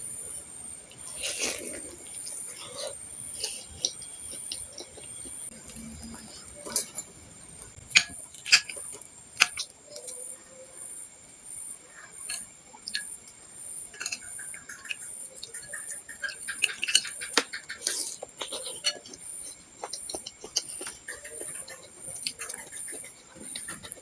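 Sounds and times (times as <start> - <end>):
wet chewing and slurping: 0.9 - 7.0, 14.0 - 24.0.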